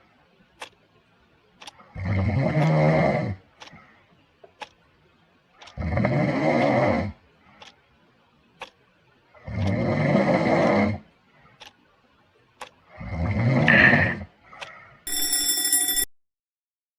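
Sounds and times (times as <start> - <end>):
clock ticking: 2.6 - 2.8, 4.6 - 4.8
loud snoring: 5.8 - 7.2, 9.4 - 11.0, 13.0 - 14.3.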